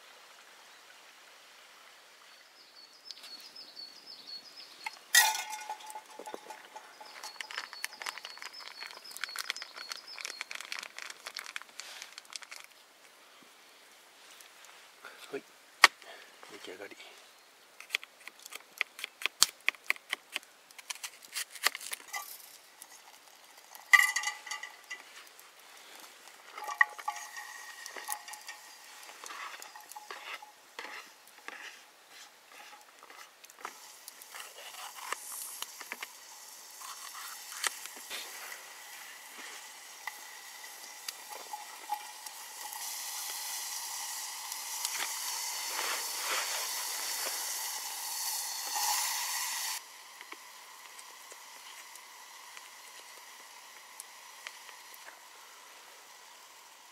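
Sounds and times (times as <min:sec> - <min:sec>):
food sizzling: 0:03.0 - 0:12.9, 0:17.8 - 0:56.9
metal utensils clinking on cookware: 0:05.1 - 0:09.5, 0:22.1 - 0:25.2, 0:26.5 - 0:31.1, 0:39.3 - 0:49.8.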